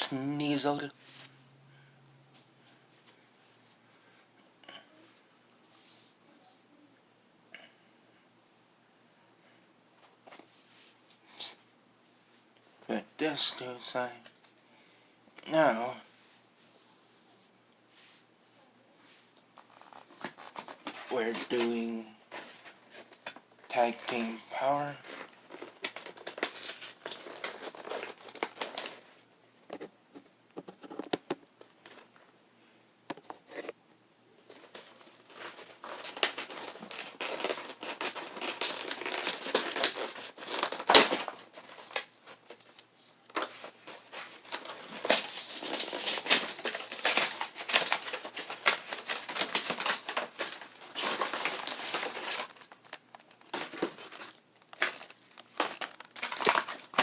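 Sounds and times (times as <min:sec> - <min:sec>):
plastic wrap crinkling and tearing: 0:19.6 - 0:29.2, 0:34.5 - 0:57.0.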